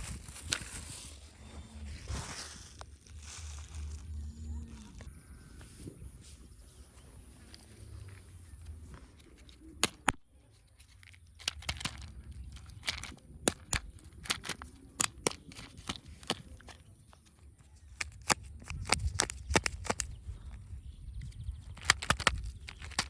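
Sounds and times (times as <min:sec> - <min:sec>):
wrappers crinkling and tearing: 0:00.0 - 0:05.1
plastic clicks and snaps: 0:08.9 - 0:20.2, 0:21.2 - 0:23.0.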